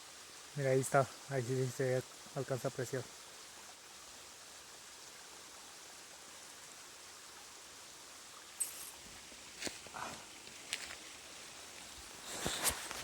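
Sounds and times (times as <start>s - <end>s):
stream running: 0.0s - 13.0s.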